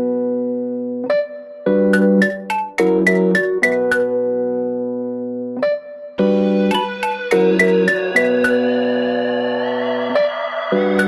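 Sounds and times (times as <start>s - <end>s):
keyboard chord: 0.0s - 11.0s
bell-like struck notes: 6.2s - 11.0s.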